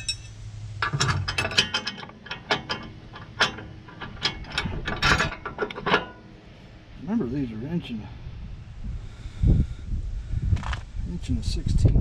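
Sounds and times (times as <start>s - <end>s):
metal tools clicking and clinking: 0.0s - 6.3s.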